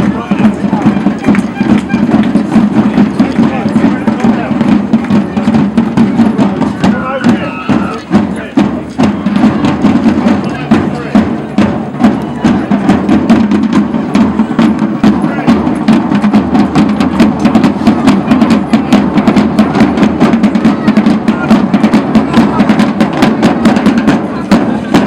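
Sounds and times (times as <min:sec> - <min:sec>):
drums beating fast rhythm: 0:00.0 - 0:25.0
din of voices: 0:06.1 - 0:08.7.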